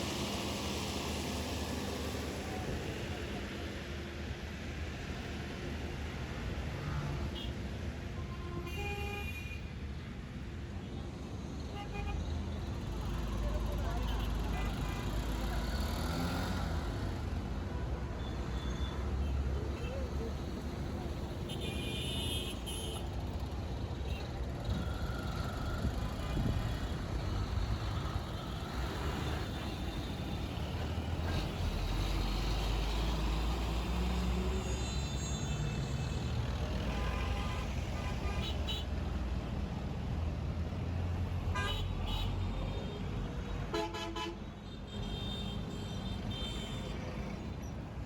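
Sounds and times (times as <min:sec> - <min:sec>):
vehicle horns honking: 0:43.7 - 0:47.0.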